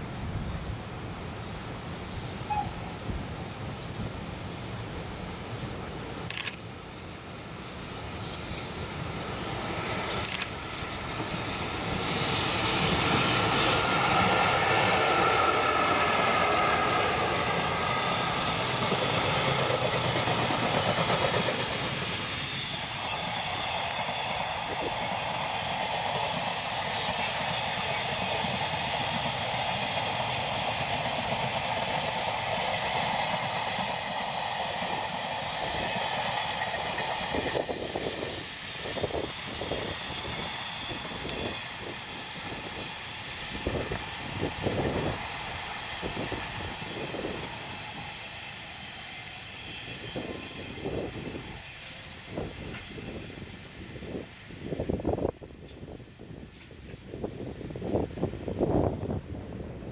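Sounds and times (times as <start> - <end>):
electric locomotive passing: 0.0 - 59.9.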